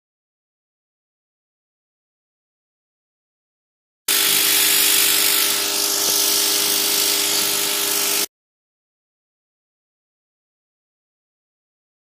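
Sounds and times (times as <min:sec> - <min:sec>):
pressure washer spraying: 0:04.1 - 0:08.3.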